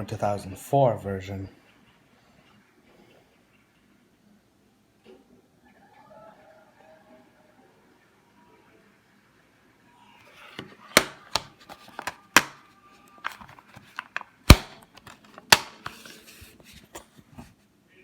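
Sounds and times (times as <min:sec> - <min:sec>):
plastic cases clicking and knocking: 0:10.5 - 0:12.6, 0:13.2 - 0:17.0.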